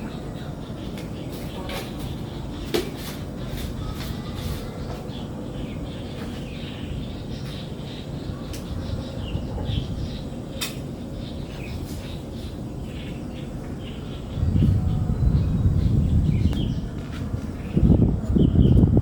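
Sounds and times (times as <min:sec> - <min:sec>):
small birds chirping: 0:00.0 - 0:19.0
steady low rumble: 0:05.3 - 0:19.0.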